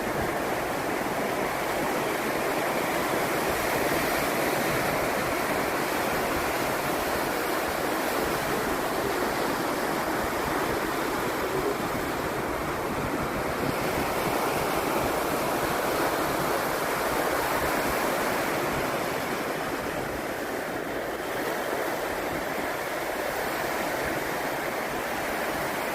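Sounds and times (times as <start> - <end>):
ocean waves breaking on beach: 0.0 - 25.9.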